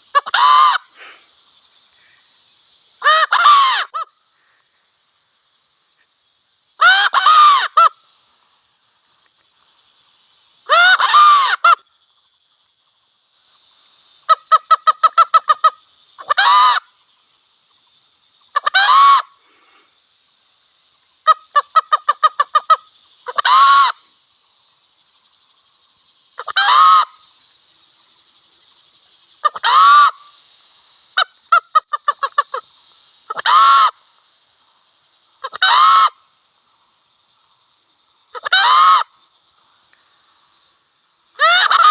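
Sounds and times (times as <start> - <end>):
hen and cock squawking: 0.1 - 1.1, 3.0 - 4.1, 6.8 - 8.0, 10.7 - 11.8, 14.3 - 16.9, 18.6 - 19.4, 21.3 - 24.0, 26.4 - 27.2, 29.4 - 30.3, 33.3 - 34.0, 35.4 - 36.2, 38.4 - 39.1, 41.4 - 41.9.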